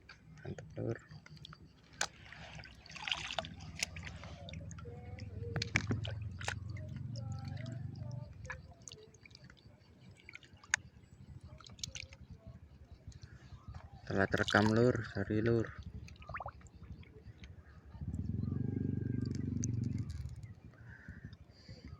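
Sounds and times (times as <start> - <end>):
water splashing and dripping: 0.9 - 10.8, 11.4 - 12.3, 13.1 - 17.0.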